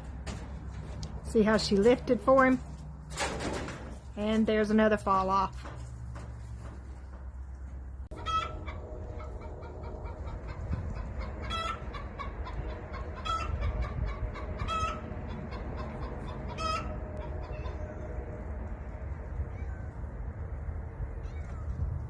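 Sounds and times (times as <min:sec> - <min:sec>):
steady low rumble: 0:05.5 - 0:22.0
chickens clucking: 0:08.1 - 0:18.4.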